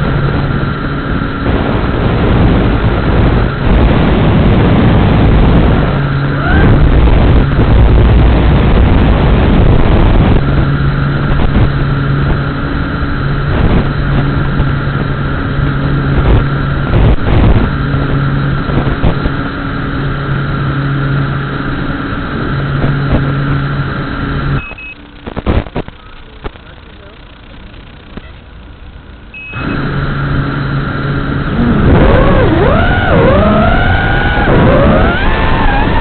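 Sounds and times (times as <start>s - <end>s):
wind rushing over microphone: 0.0s - 26.0s, 29.4s - 36.0s
drone motors humming: 0.0s - 36.0s.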